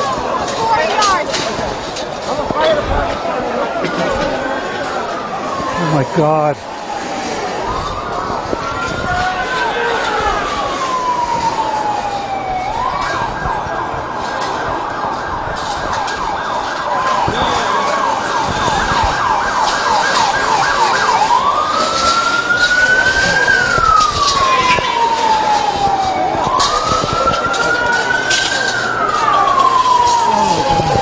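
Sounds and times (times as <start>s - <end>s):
emergency siren wail: 0.0s - 31.0s
emergency siren yelp: 0.0s - 31.0s.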